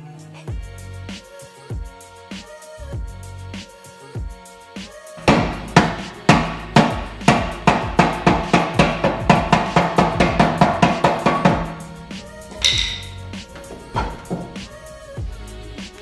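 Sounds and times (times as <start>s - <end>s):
kick drum hits: 5.3s - 11.8s.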